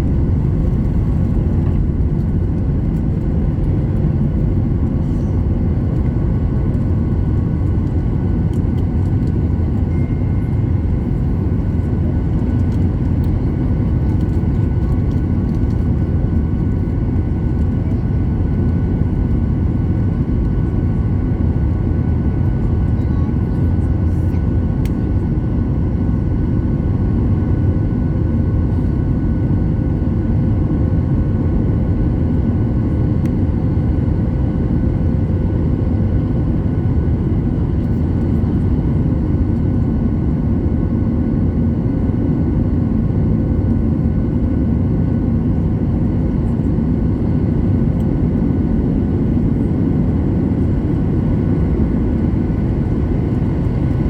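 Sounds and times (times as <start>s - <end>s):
jet engines and rushing air: 0.0s - 9.6s
faint engine tones: 0.0s - 15.9s.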